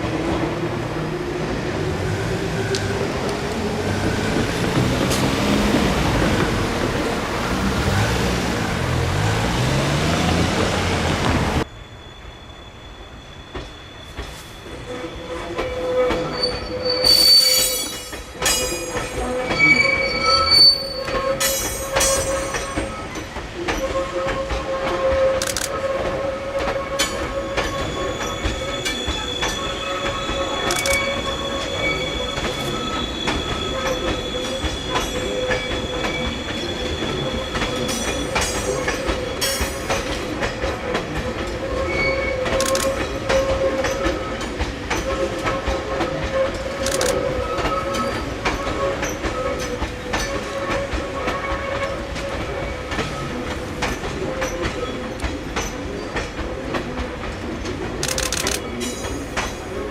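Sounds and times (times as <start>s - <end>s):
train wheels squealing: 10.6s - 56.8s.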